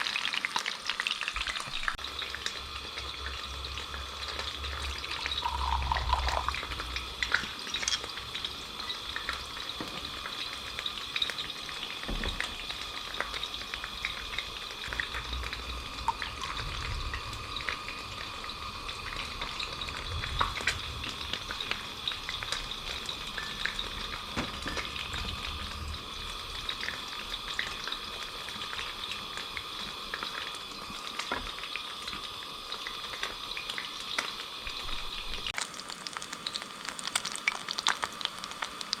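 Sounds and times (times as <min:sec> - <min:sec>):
fish deep-frying in oil: 0:00.0 - 0:39.0.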